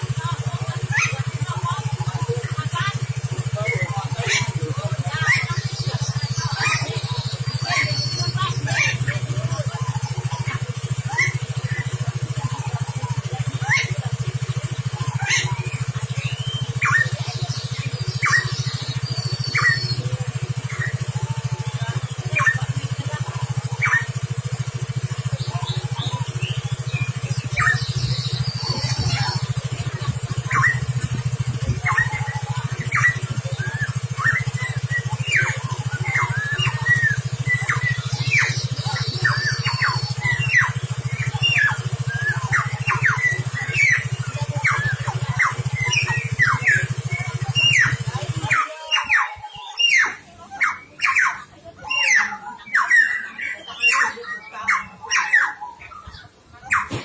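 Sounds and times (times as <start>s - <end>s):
songbird chirping: 0.0s - 57.0s.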